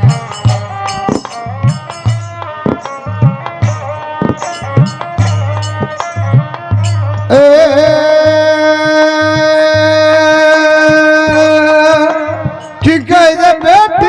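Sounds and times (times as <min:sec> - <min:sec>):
low drum beat: 0:00.0 - 0:14.0.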